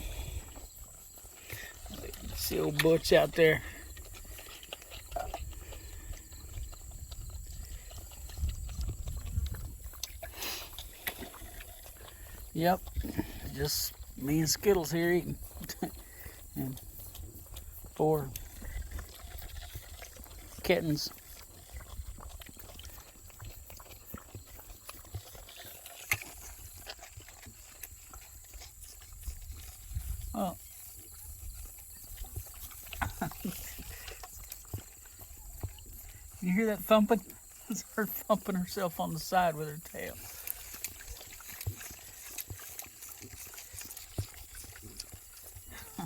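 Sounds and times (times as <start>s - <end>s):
calf sucking and clicking: 0.0s - 46.0s.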